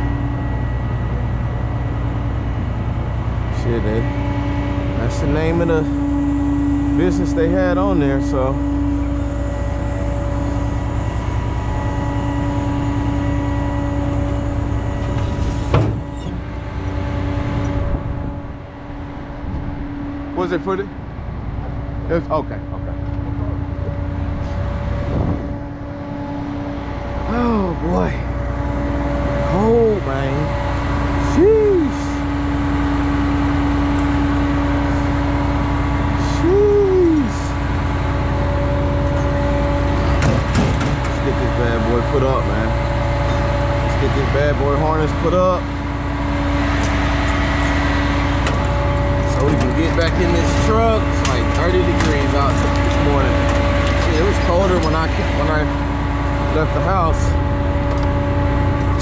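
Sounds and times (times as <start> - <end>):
truck engine idling: 0.0 - 59.0
person exclaiming: 31.2 - 32.2, 36.2 - 37.5.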